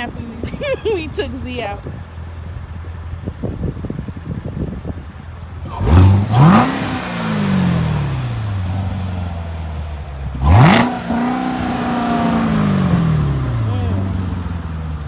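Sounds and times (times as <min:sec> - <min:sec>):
car engine revving: 0:05.4 - 0:15.0.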